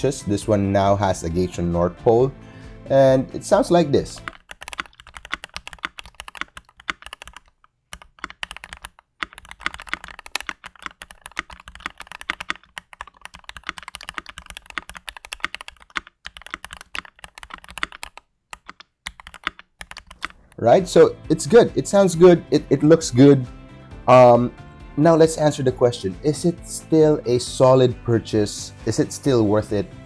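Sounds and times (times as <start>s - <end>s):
mechanical keyboard typing: 4.2s - 20.5s.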